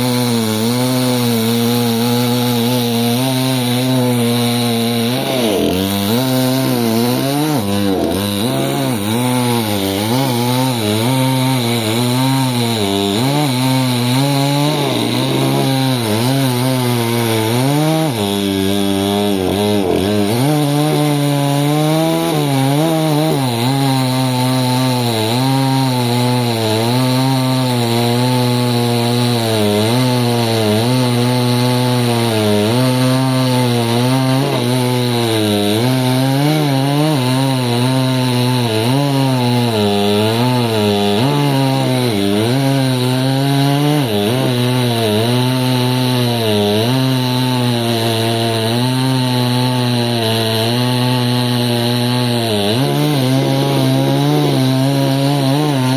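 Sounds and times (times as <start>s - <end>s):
chainsaw cutting through log: 0.0s - 55.9s.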